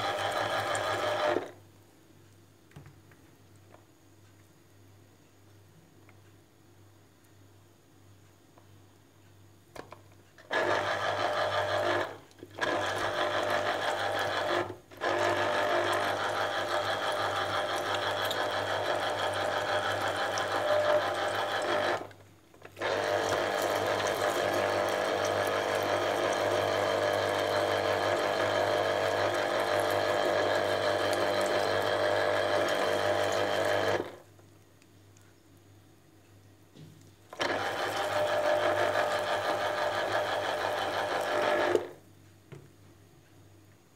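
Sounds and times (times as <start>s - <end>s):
kitchen appliance motor running: 0.0s - 1.5s, 10.5s - 22.1s, 22.8s - 34.2s, 37.4s - 42.0s.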